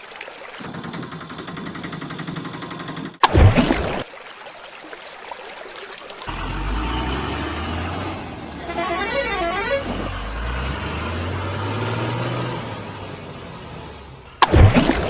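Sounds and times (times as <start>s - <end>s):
vehicle engine rumble: 0.6s - 3.2s, 6.3s - 15.0s
warbling horn-like tone: 8.6s - 10.5s.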